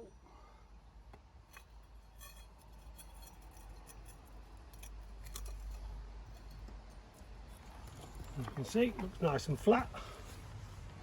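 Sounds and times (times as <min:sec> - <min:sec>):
small parts clicking and tapping: 0:01.1 - 0:09.2.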